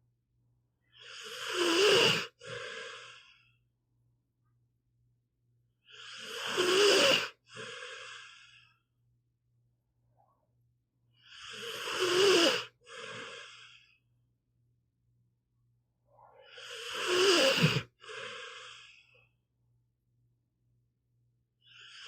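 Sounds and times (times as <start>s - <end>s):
dog snoring: 1.0s - 3.2s, 5.9s - 8.6s, 11.2s - 13.7s, 16.4s - 19.0s.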